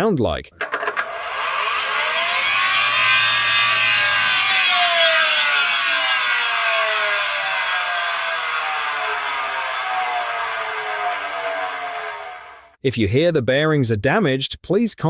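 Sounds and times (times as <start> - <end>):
worn bearings grinding: 0.6 - 11.3
whining tones falling in pitch: 0.7 - 12.8.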